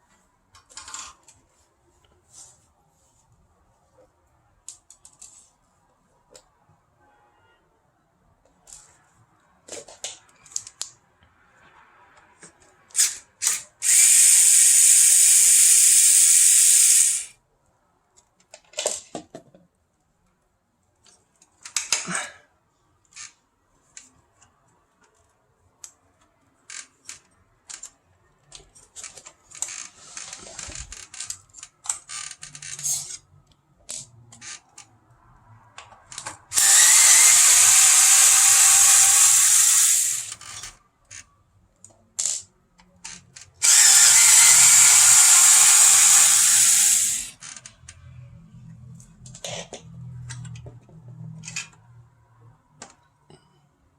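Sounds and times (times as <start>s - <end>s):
electric screwdriver running: 13.0s - 17.3s, 36.5s - 40.6s, 43.6s - 47.4s
clicks and taps of parts handled: 52.8s - 53.4s.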